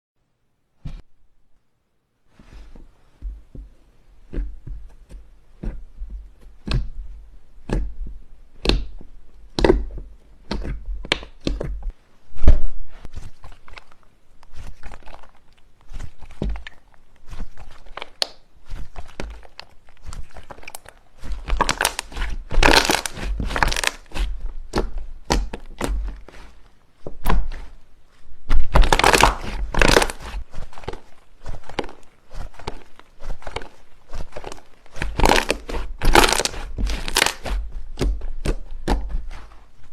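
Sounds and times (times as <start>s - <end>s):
slime clicking and popping: 35.0s - 39.0s.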